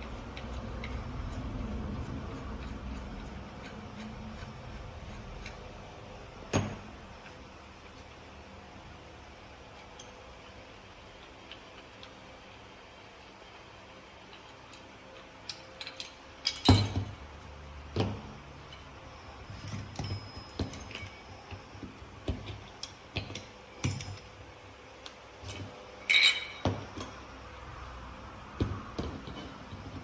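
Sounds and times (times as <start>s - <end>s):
small metal parts clinking: 15.4s - 17.1s, 23.8s - 24.3s.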